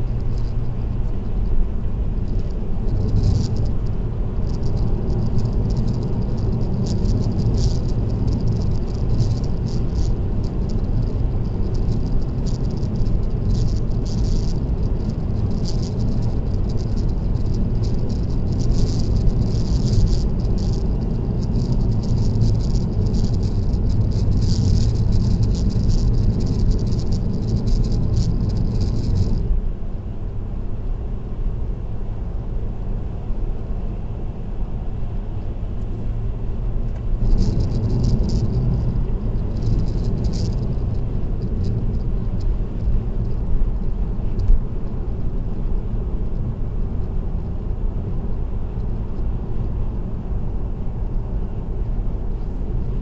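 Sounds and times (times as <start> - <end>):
road and tyre rumble: 0.0 - 53.0
loose object rattling: 2.2 - 29.4, 37.1 - 43.4.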